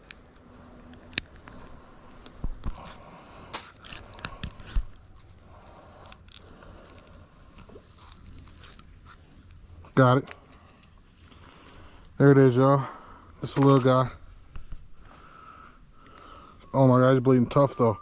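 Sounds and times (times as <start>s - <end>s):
clicks scrapes and crinkles of bag: 1.5s - 9.2s.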